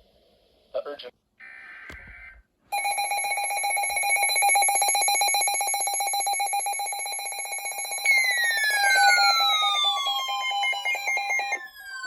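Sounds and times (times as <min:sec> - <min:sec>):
pulsing electronic alarm tone: 0:02.8 - 0:12.0.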